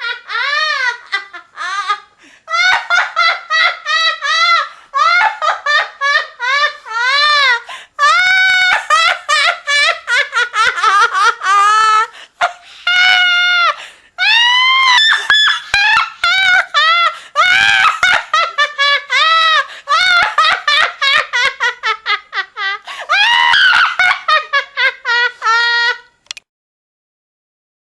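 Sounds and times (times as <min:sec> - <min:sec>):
high-pitched cackling laugh: 0:00.0 - 0:26.2.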